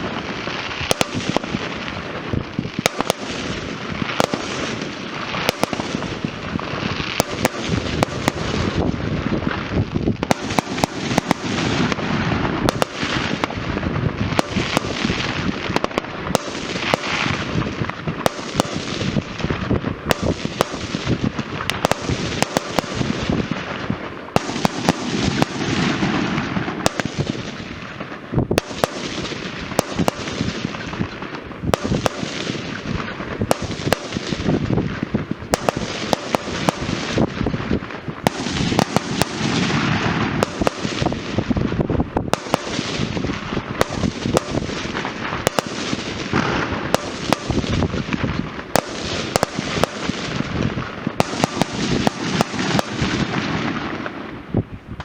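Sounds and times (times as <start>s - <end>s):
fireworks bangs and cracks: 0.0s - 55.0s
fireworks crackling: 0.0s - 55.0s.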